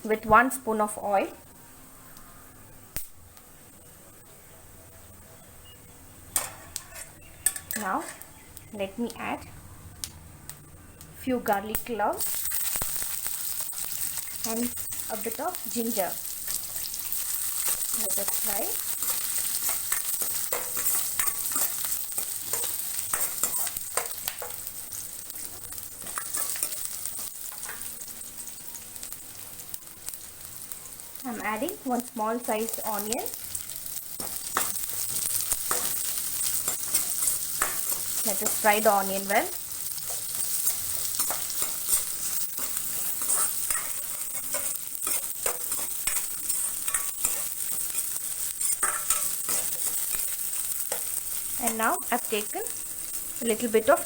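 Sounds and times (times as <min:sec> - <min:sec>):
garlic sizzling in hot oil: 0:06.3 - 0:09.4, 0:11.4 - 0:54.0.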